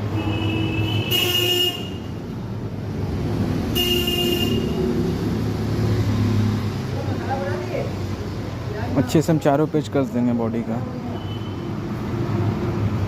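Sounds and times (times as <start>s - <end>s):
background traffic hum: 0.0s - 13.0s
vehicle horn honking: 0.1s - 2.1s, 3.7s - 4.8s.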